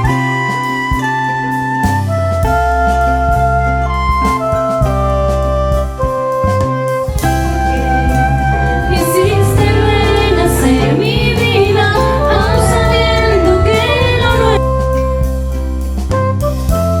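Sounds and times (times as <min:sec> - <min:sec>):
pop music: 0:07.2 - 0:14.6
woman singing: 0:08.6 - 0:14.6.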